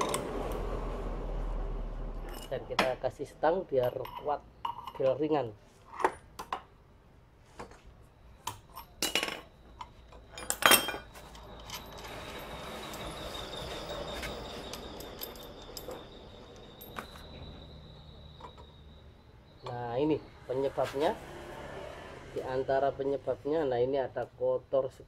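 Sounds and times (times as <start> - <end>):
metal tools clinking: 2.2 - 3.0, 3.6 - 6.5, 8.4 - 17.7
steady metallic noise: 8.7 - 23.5
thin high tone: 9.6 - 21.9.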